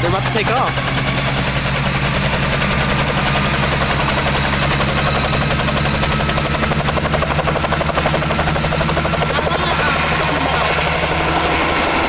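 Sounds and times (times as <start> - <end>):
helicopter engine hum: 0.0 - 12.0
helicopter rotor chop: 0.0 - 12.0.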